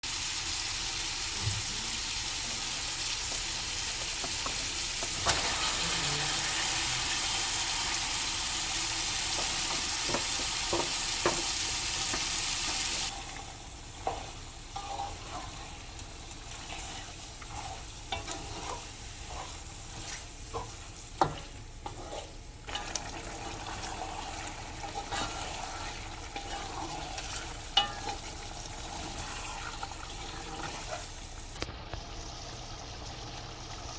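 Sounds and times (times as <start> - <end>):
food sizzling in hot oil: 0.0 - 33.9
spoon clinking and scraping in pan: 27.2 - 28.4.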